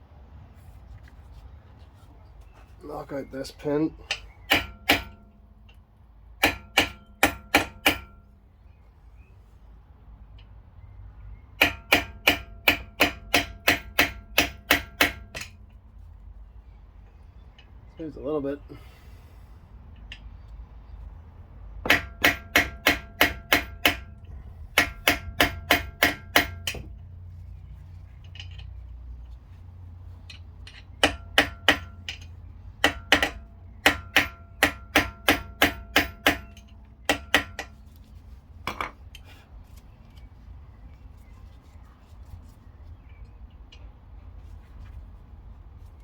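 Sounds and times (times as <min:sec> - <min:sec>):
hammer striking metal: 0:04.1 - 0:05.4, 0:06.4 - 0:08.2, 0:11.6 - 0:15.6, 0:21.8 - 0:24.2, 0:24.8 - 0:27.0, 0:30.7 - 0:37.7.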